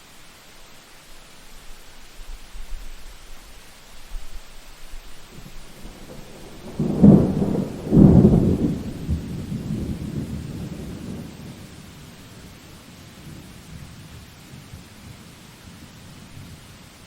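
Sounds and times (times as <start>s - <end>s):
steady rain hiss: 0.0s - 17.0s
thunder clap and rumble: 5.4s - 12.7s.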